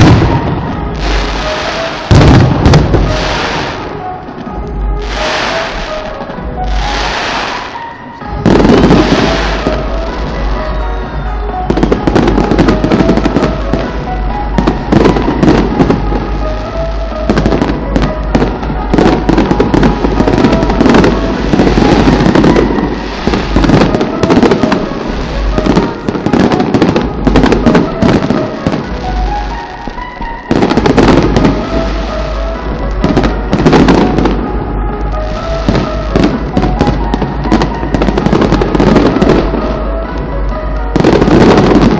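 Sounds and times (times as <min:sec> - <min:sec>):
fireworks bangs and crackles: 0:00.0 - 0:41.9.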